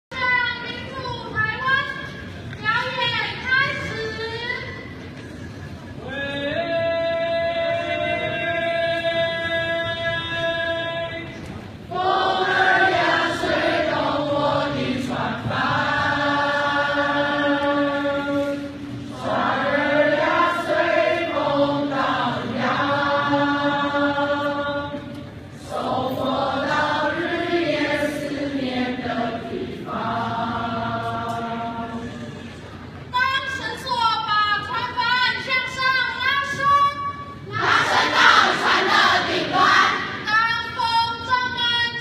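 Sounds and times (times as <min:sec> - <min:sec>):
group singing in unison: 0:11.9 - 0:32.5, 0:37.5 - 0:40.2.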